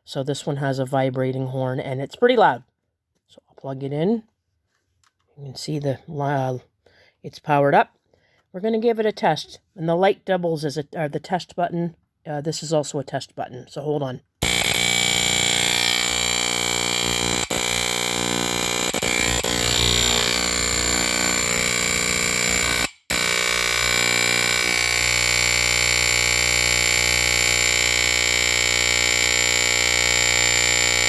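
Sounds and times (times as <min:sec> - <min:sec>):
smoke detector alarm tone: 0:14.4 - 0:31.0.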